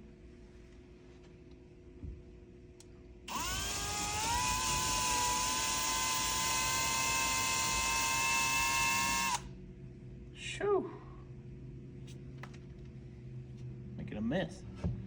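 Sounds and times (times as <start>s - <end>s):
cordless drill whining: 3.3s - 9.5s.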